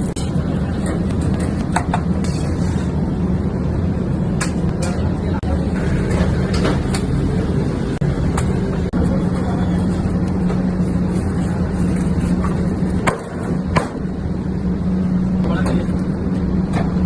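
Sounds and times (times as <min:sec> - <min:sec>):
low mechanical hum: 0:00.0 - 0:17.0.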